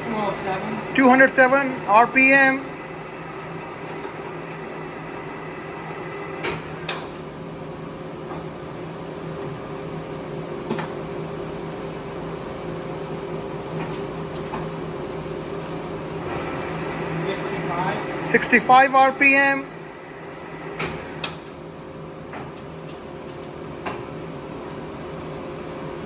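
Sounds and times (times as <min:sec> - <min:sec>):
lathe humming: 0:00.0 - 0:07.9, 0:15.1 - 0:22.2.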